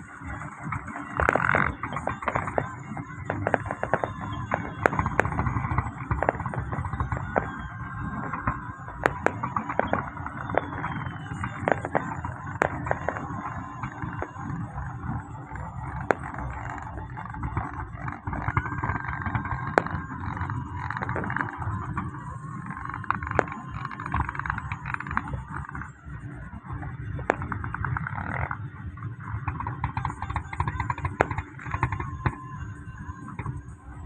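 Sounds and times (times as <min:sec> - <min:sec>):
busy noisy din: 0:00.0 - 0:34.0.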